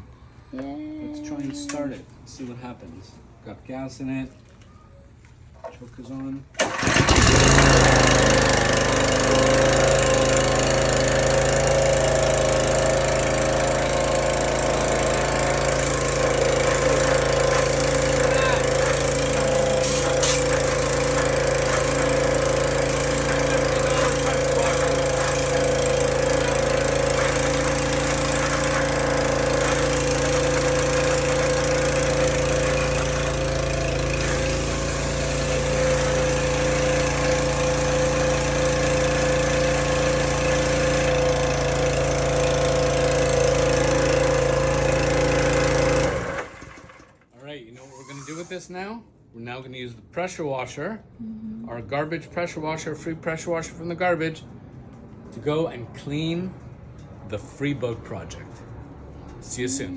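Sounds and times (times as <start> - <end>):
pressure washer engine running: 6.6 - 47.2, 47.8 - 48.6.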